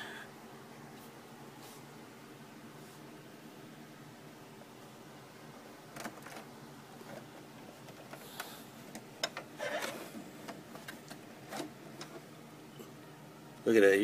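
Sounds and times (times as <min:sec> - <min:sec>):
plastic clicks and knocks: 0:08.9 - 0:09.5.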